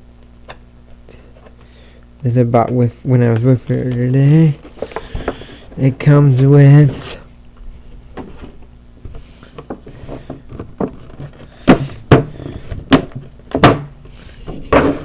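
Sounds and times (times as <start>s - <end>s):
packaging knocks and clicks: 3.3s - 5.7s.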